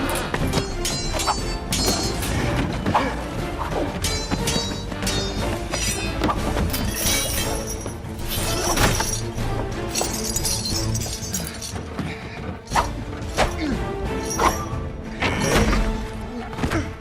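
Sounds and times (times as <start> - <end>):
swords clashing: 0.0 - 9.2
orchestral film score: 0.0 - 17.0.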